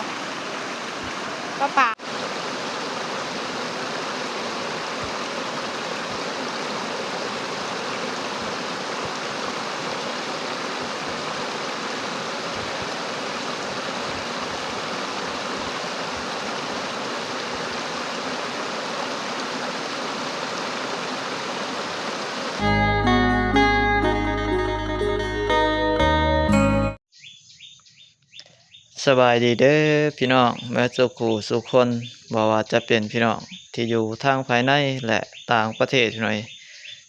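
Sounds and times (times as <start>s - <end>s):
rushing stream water: 0.0s - 22.7s.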